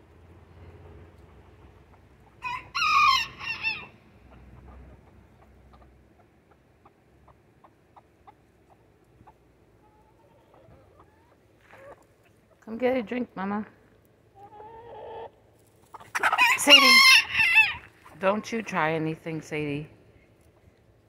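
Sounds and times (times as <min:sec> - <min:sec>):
chickens clucking: 0:00.8 - 0:12.6, 0:14.1 - 0:18.8
rooster crowing: 0:02.4 - 0:03.9.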